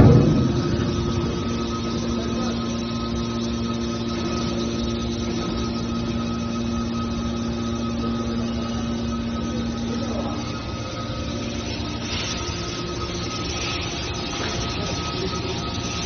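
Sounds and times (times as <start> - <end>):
baler machine hum: 0.0 - 16.0.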